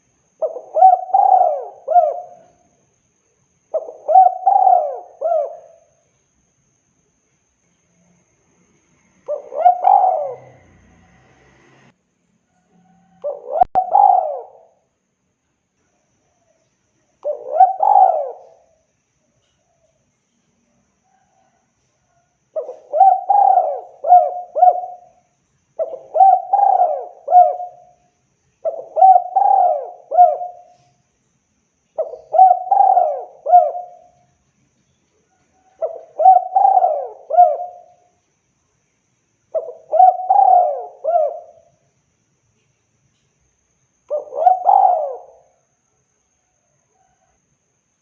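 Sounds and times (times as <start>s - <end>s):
dove cooing: 0.0s - 2.7s, 3.7s - 6.0s, 9.2s - 11.3s, 12.8s - 14.8s, 17.2s - 18.8s, 21.1s - 28.0s, 28.6s - 30.9s, 32.0s - 34.3s, 35.4s - 38.1s, 39.5s - 41.8s, 44.1s - 45.6s.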